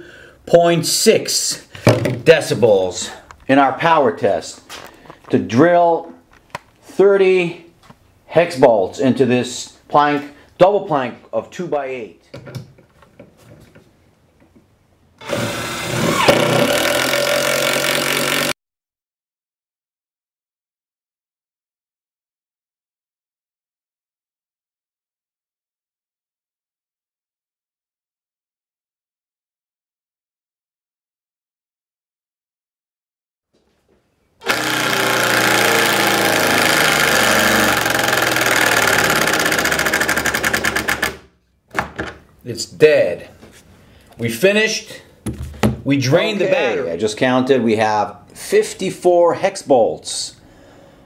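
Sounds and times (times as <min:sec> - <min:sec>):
impact driver hammering a bolt: 0:34.4 - 0:41.2.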